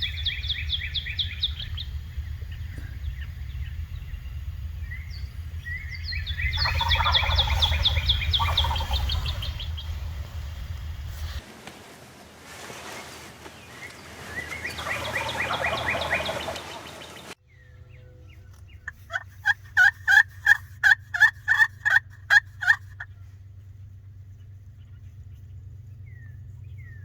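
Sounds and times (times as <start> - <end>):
wind: 0.0 - 27.0
turkey gobbling: 6.0 - 9.9, 14.4 - 17.4, 18.8 - 23.2
turkey yelps: 6.5 - 9.7, 14.6 - 17.0, 18.8 - 23.2.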